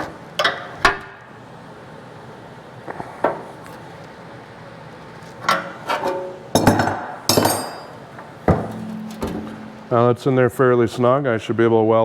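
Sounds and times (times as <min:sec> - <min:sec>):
metal tools clinking and knocking: 0:05.9 - 0:09.8.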